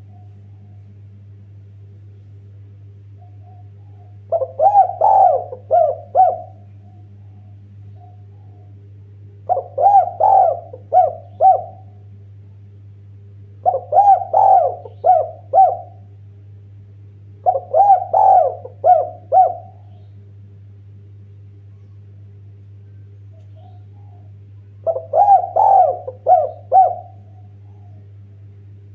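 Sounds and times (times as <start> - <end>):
steady low hum: 0.0 - 28.9
dove cooing: 3.2 - 8.8, 9.4 - 12.0, 13.6 - 16.1, 17.4 - 20.1, 23.3 - 28.2.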